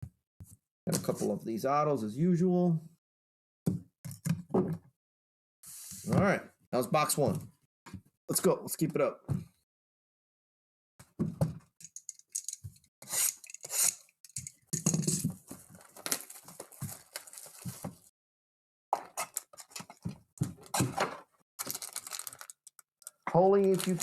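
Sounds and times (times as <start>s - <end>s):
foil packs tearing and crinkling: 15.8s - 17.8s, 21.6s - 22.8s, 23.6s - 24.0s.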